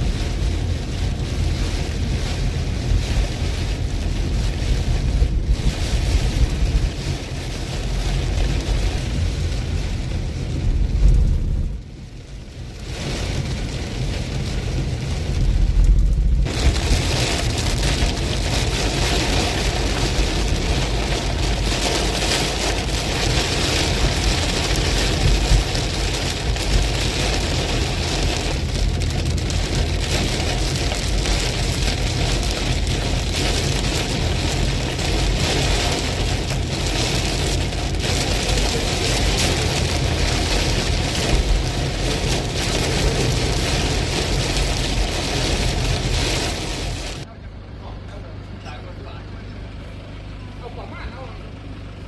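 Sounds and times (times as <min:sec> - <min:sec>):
wind buffeting microphone: 0:00.0 - 0:12.0
heavy rain: 0:00.0 - 0:47.3.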